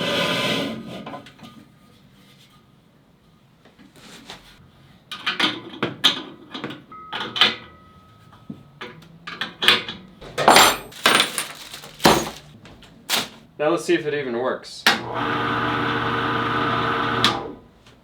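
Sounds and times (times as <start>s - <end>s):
metal parts knocking and clinking: 9.3s - 12.6s.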